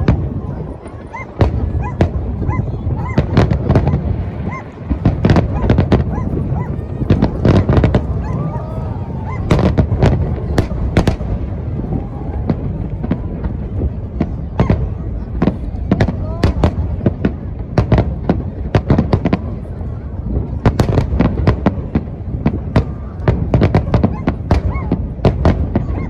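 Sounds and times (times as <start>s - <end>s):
fireworks whistling: 0.0s - 15.0s
fireworks bursting with sharp bangs: 0.0s - 26.0s.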